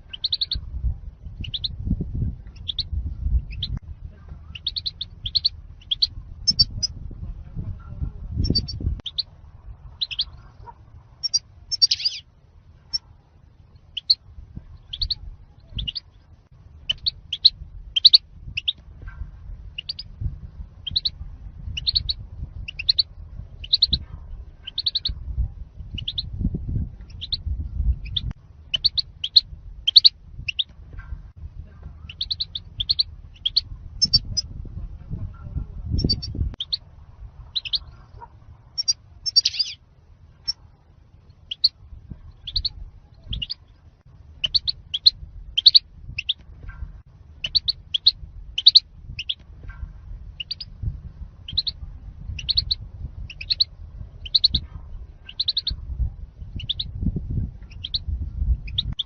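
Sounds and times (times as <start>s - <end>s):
low background rumble: 0.0s - 59.0s
goldfinch chirping: 0.1s - 0.6s, 1.4s - 1.7s, 2.6s - 2.9s, 4.5s - 6.9s, 8.4s - 9.3s, 10.0s - 10.4s, 11.2s - 12.2s, 14.9s - 15.2s, 16.9s - 18.8s, 19.8s - 20.1s, 20.8s - 21.2s, 21.8s - 24.0s, 24.6s - 25.1s, 26.0s - 26.3s, 27.1s - 27.4s, 28.0s - 30.7s, 32.1s - 34.4s, 36.0s - 36.8s, 37.5s - 38.0s, 38.8s - 39.8s, 41.5s - 41.7s, 42.4s - 43.6s, 44.4s - 46.4s, 47.4s - 49.4s, 50.4s - 50.7s, 51.5s - 54.6s, 55.3s - 55.8s, 56.6s - 56.9s, 57.7s - 59.0s.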